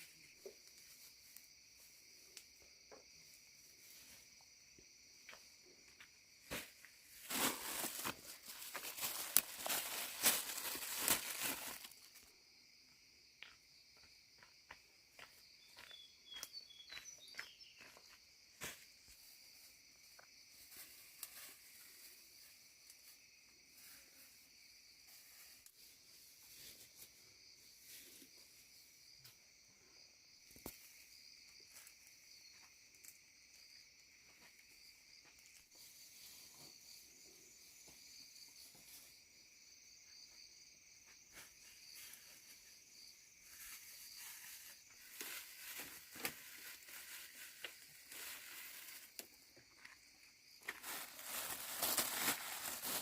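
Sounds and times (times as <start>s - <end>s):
high drone of insects: 0.0s - 53.0s
loud rustling and tearing: 7.2s - 12.1s, 50.7s - 53.0s.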